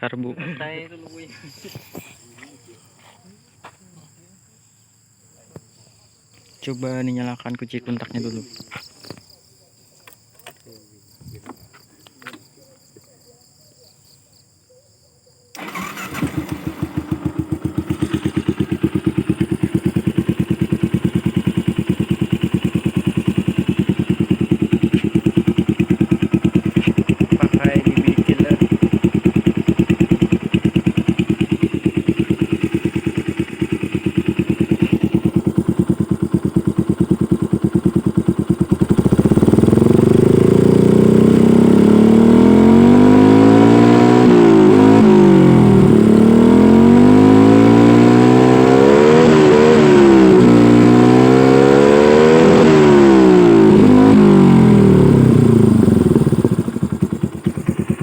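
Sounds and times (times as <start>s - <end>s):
motorcycle engine idling and revving: 0.6s - 4.2s, 15.6s - 58.0s.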